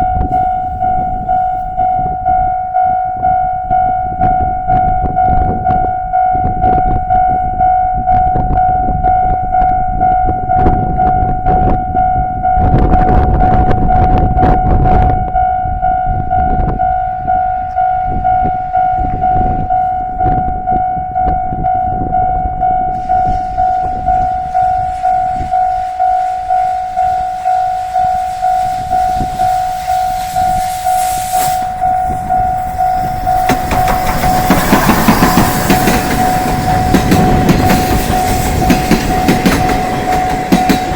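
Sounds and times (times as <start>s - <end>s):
level crossing alarm dinging: 0.0s - 40.9s
train rumble: 0.0s - 40.9s
train hiss: 23.0s - 40.9s.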